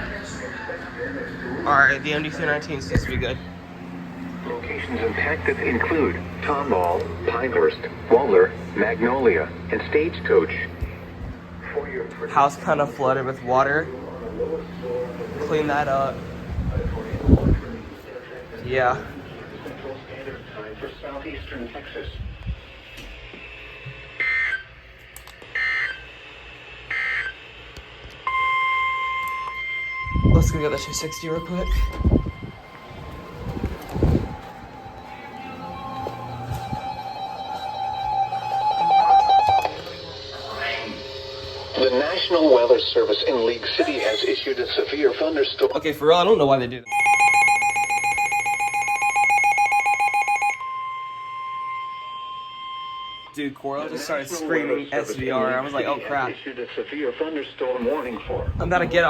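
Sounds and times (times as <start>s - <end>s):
steady warning alarm tone: 0.0s - 56.3s
steady single tone: 28.3s - 41.8s, 46.9s - 53.6s
warbling data bursts: 29.4s - 45.9s.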